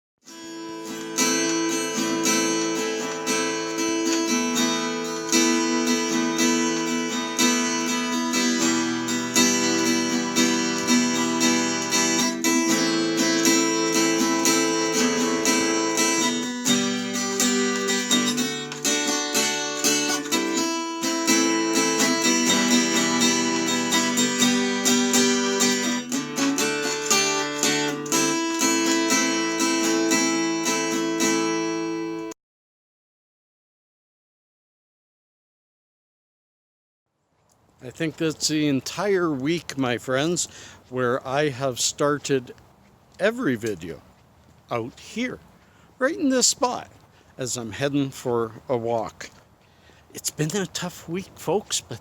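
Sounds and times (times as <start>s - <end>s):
acoustic guitar strumming: 0.2s - 32.4s.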